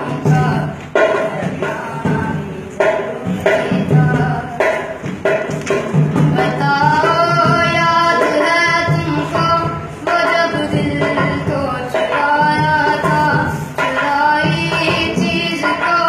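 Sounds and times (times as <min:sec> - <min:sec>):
music with drums: 0:00.0 - 0:16.0
man singing: 0:06.3 - 0:16.0.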